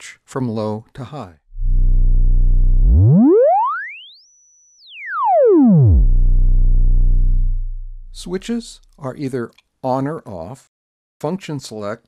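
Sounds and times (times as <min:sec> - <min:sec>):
synthesizer tone sweeping in pitch: 0:01.6 - 0:08.2.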